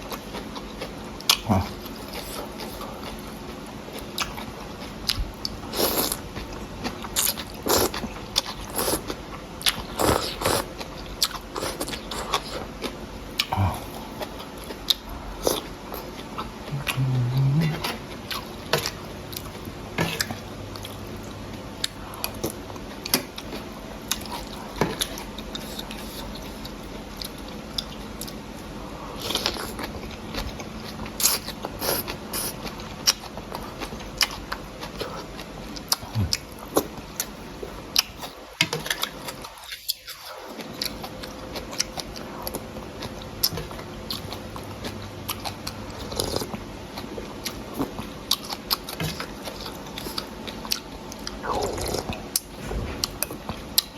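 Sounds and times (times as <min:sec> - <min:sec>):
person chewing food: 0:00.0 - 0:53.9
low hum: 0:16.6 - 0:18.1.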